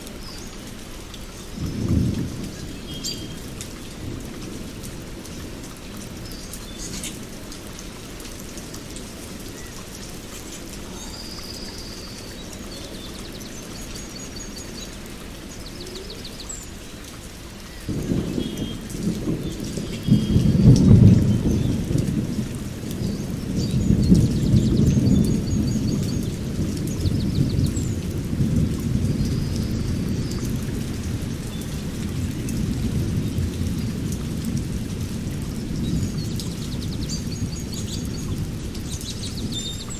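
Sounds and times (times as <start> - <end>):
steady rain: 0.0 - 39.9
thunder rumbling: 1.6 - 5.6, 17.8 - 39.9
birds chirping: 9.4 - 17.1.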